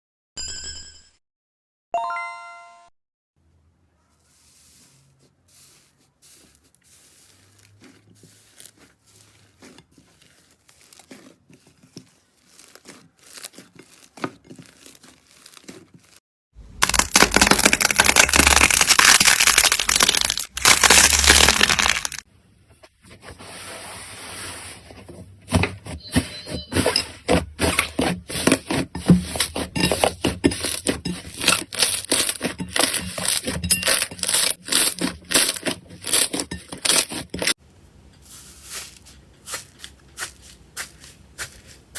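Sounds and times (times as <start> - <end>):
crunchy slime crackling: 5.8 - 16.2, 16.8 - 22.2
short chime: 26.0 - 26.8.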